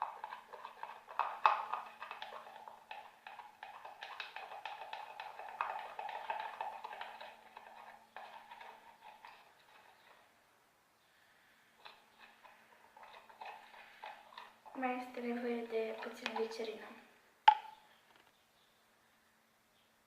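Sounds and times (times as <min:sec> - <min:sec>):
stirrer tapping and scraping container: 0:00.0 - 0:10.3, 0:11.8 - 0:16.9, 0:17.5 - 0:18.3
stirrer mixing slime: 0:00.0 - 0:10.4, 0:11.8 - 0:17.0.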